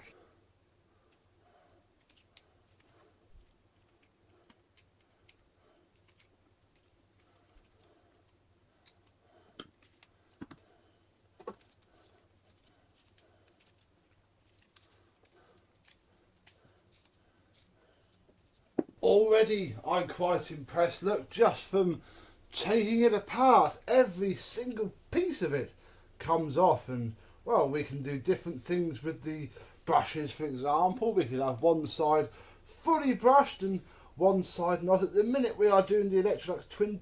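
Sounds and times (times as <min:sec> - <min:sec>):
faint clicks and snips: 0:00.0 - 0:18.8.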